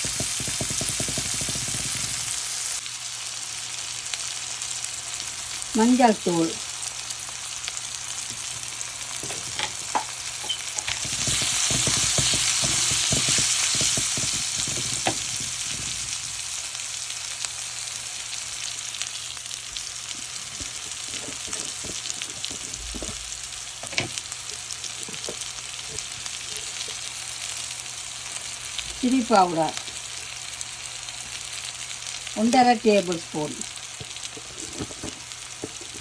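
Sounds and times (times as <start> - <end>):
spoon stirring and scraping pan: 0.0 - 2.8, 8.4 - 16.4, 20.2 - 23.2, 34.0 - 36.0
shallots sizzling in hot oil: 0.0 - 36.0.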